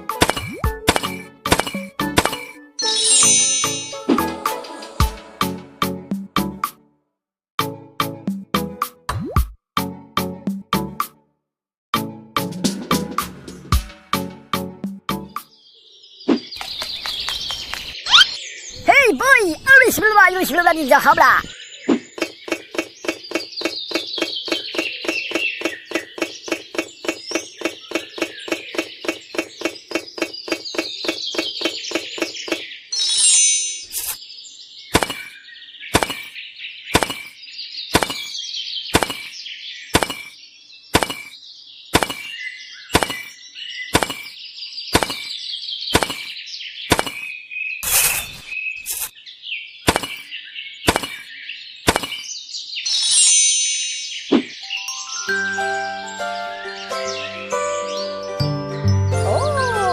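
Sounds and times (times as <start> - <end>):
birds chirping: 15.4 - 53.3, 53.9 - 59.9.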